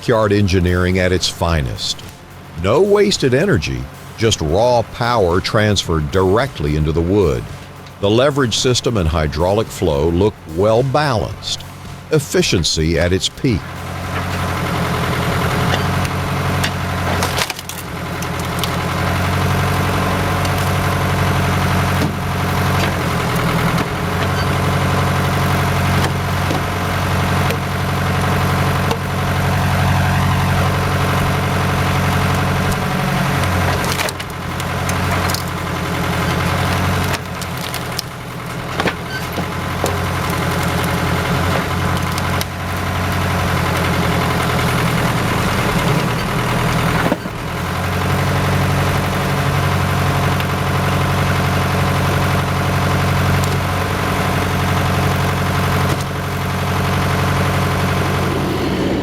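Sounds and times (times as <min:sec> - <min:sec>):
machine engine running: 0:00.0 - 0:59.0
wood cracking and splintering: 0:14.0 - 0:29.8, 0:32.0 - 0:57.8.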